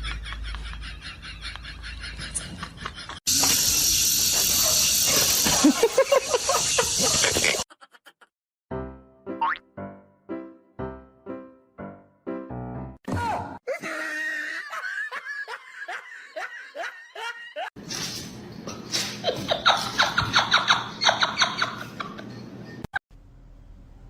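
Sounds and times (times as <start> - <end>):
high-pitched human laughter: 5.4 - 8.3, 13.7 - 17.7
music: 8.7 - 13.0.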